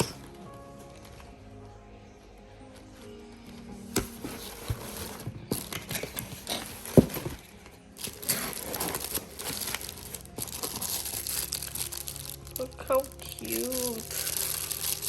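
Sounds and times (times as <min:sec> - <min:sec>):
packaging rustling and crinkling: 0:04.0 - 0:15.0.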